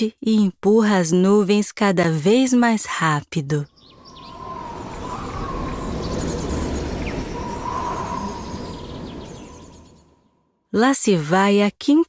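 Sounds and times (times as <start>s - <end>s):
faint birds chirping: 3.5s - 10.4s
wind gust: 3.7s - 10.4s.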